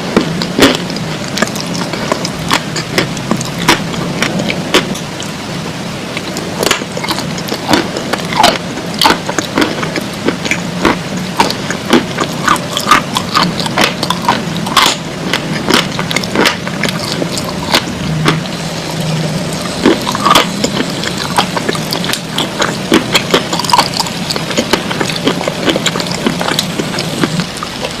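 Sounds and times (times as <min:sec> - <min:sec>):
crunching and chewing clay: 0:00.0 - 0:05.0, 0:06.2 - 0:28.0
steady low hum: 0:00.0 - 0:28.0.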